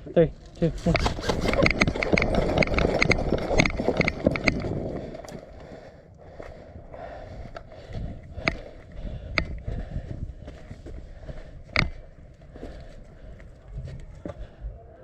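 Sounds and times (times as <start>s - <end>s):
gear jostling: 0.2s - 8.9s
running footsteps: 0.4s - 15.0s
sharp cracks: 0.5s - 5.5s.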